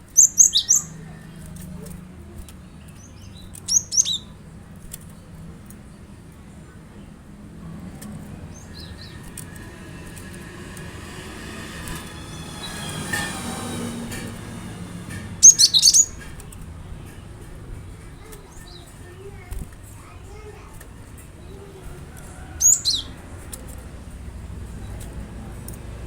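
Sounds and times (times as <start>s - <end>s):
bird chirping: 0.0s - 6.1s, 8.3s - 17.3s, 21.4s - 25.4s.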